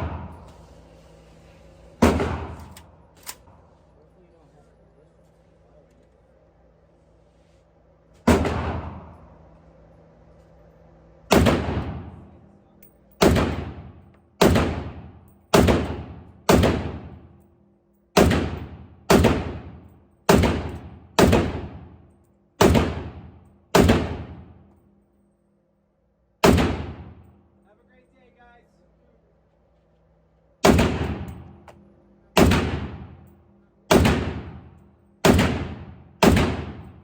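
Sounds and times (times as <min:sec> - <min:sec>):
gunshots: 0:00.0 - 0:00.4, 0:02.0 - 0:02.8, 0:08.3 - 0:09.2, 0:11.3 - 0:12.2, 0:13.2 - 0:17.2, 0:18.2 - 0:21.9, 0:22.6 - 0:24.5, 0:26.4 - 0:27.3, 0:30.6 - 0:31.4, 0:32.4 - 0:33.3, 0:33.9 - 0:37.0.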